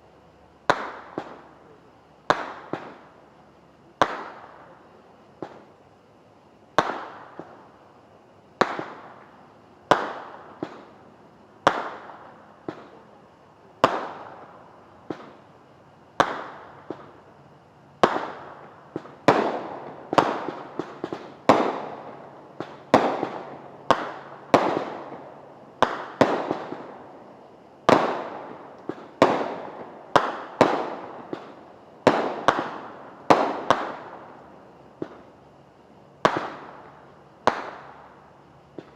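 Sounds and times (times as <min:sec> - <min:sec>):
fireworks bangs with echo: 0:00.7 - 0:03.1, 0:04.0 - 0:04.8, 0:05.4 - 0:05.7, 0:06.8 - 0:07.7, 0:08.6 - 0:11.0, 0:11.6 - 0:13.2, 0:13.8 - 0:15.4, 0:16.2 - 0:17.3, 0:18.0 - 0:35.3, 0:36.2 - 0:38.2.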